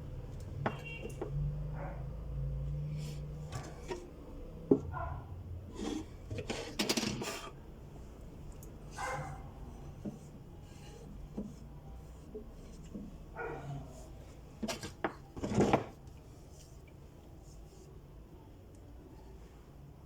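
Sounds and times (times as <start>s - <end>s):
scraping and rubbing: 8.9s - 16.0s.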